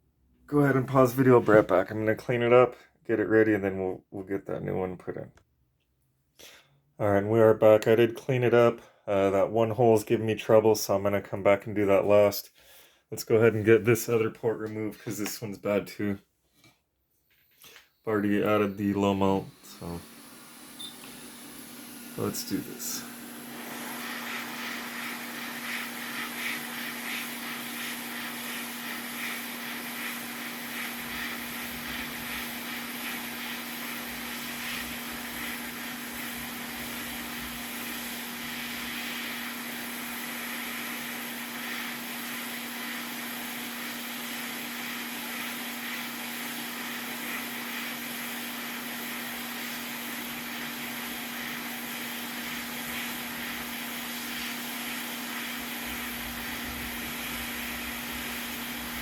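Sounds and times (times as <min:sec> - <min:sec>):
hot air station blowing: 0:17.6 - 0:59.0.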